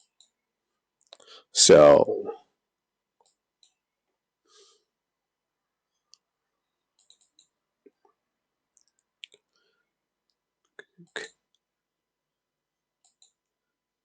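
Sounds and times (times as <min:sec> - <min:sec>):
computer mouse clicks: 0:00.0 - 0:00.4, 0:03.2 - 0:03.8, 0:06.9 - 0:07.6, 0:13.0 - 0:13.5
keyboard clicks: 0:07.0 - 0:07.6, 0:13.0 - 0:13.5.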